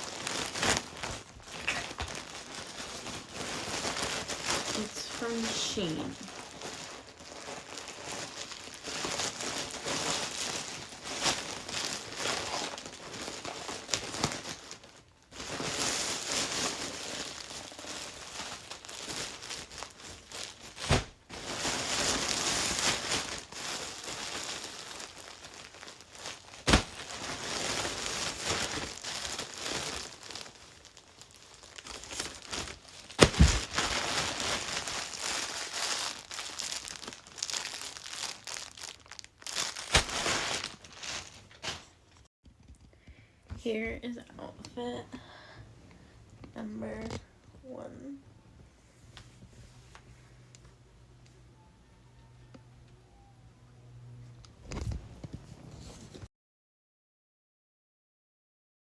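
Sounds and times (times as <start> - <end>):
packaging crinkling and rustling: 0.0 - 42.9.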